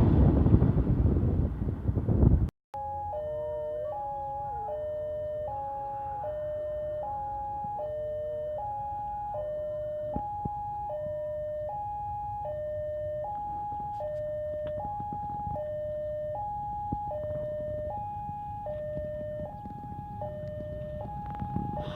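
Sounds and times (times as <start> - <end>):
low rumble: 0.0 - 2.5, 12.8 - 21.9
level crossing two-tone alarm: 2.8 - 21.9.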